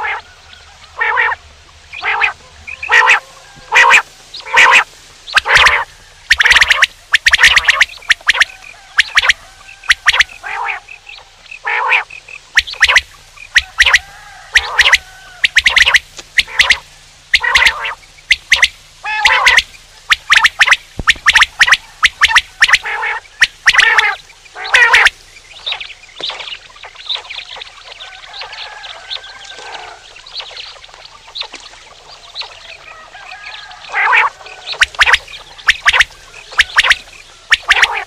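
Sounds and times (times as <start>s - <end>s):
quail calling: 0.0s - 38.0s.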